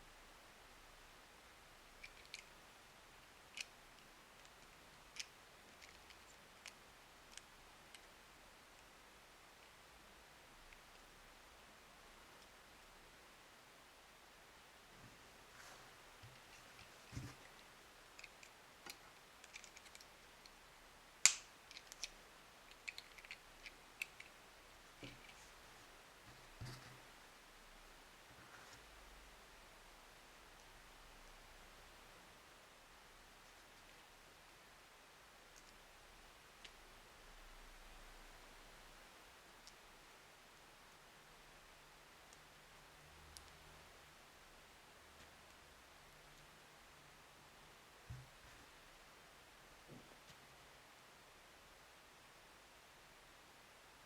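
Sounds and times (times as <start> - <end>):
plastic toy pieces clicking: 19.4 - 20.1, 22.7 - 24.3.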